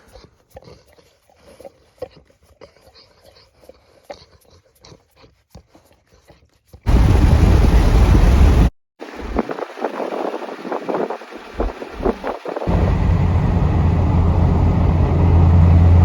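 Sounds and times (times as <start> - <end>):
dog licking and lapping: 0.0 - 6.8.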